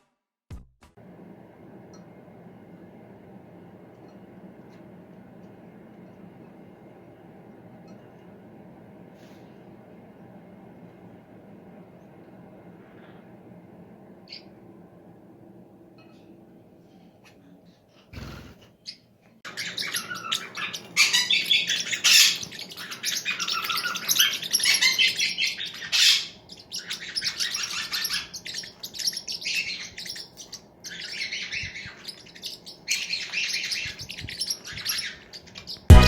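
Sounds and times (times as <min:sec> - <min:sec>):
parrots chirping and chattering: 0:18.0 - 0:36.0.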